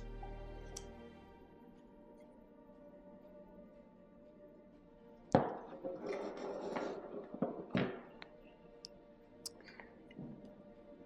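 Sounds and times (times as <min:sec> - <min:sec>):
quiet background music: 0:00.0 - 0:11.0.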